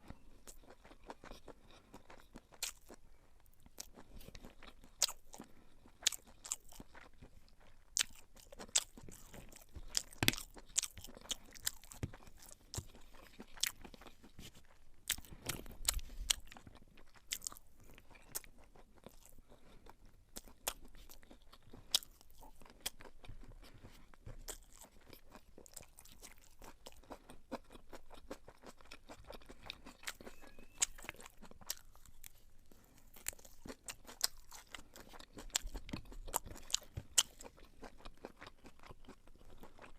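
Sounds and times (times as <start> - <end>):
person chewing food: 0.0 - 39.9.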